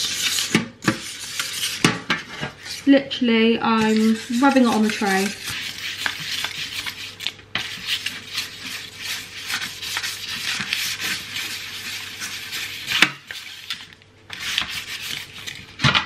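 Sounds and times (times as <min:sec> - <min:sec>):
butter scraping on metal tray: 0:00.0 - 0:02.9, 0:03.8 - 0:13.7.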